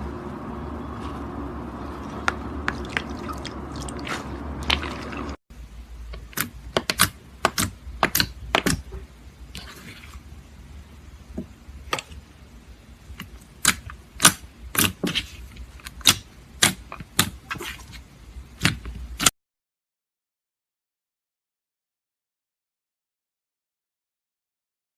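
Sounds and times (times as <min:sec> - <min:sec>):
slime clicking and popping: 0:06.2 - 0:08.8.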